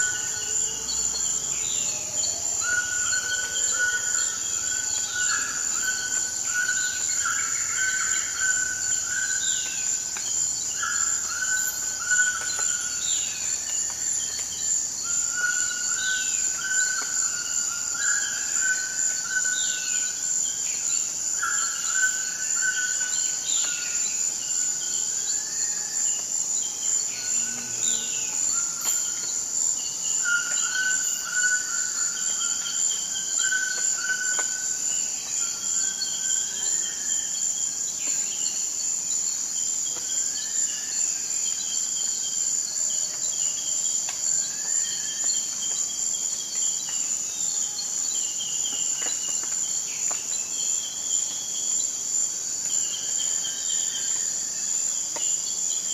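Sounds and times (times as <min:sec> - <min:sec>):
high-pitched insect drone: 0:00.0 - 0:26.3, 0:26.9 - 0:38.6.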